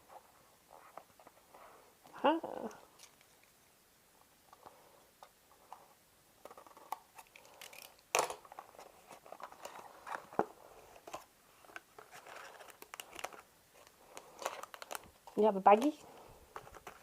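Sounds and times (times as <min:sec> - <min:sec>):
packaging crinkling and rustling: 0:06.4 - 0:17.0.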